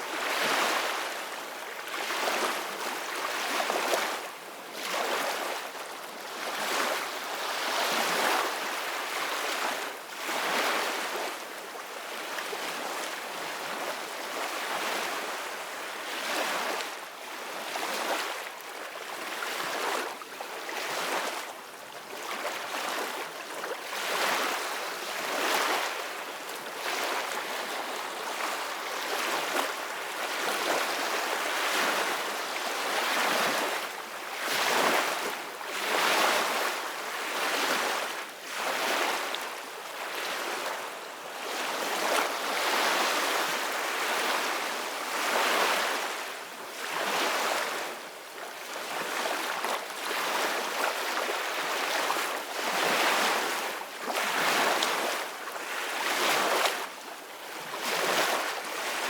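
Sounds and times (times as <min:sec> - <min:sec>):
ocean waves breaking on beach: 0:22.2 - 0:59.0.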